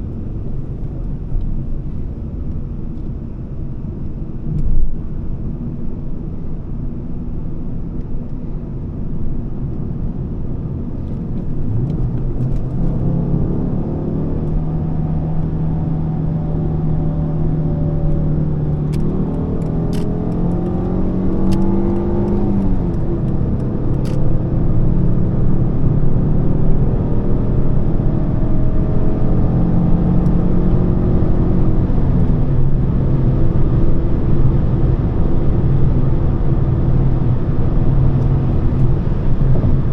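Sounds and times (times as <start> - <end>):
car engine accelerating: 11.2 - 39.9
tyre and road rumble: 17.7 - 24.5.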